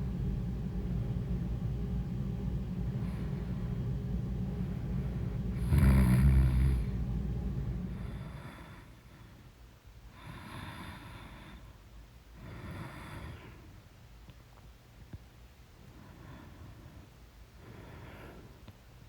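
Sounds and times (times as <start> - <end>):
low rumble: 0.0 - 8.7
woman snoring: 5.6 - 7.0.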